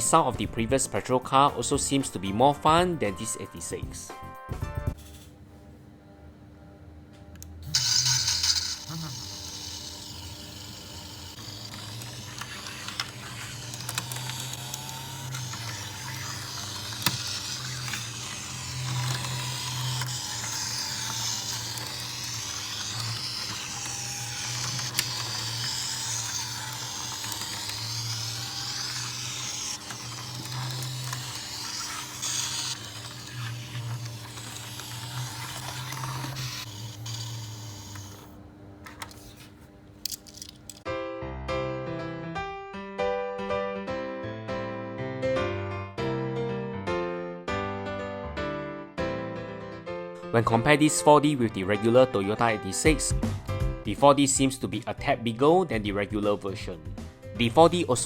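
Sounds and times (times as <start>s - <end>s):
toy car engine sound revving: 7.7s - 38.3s.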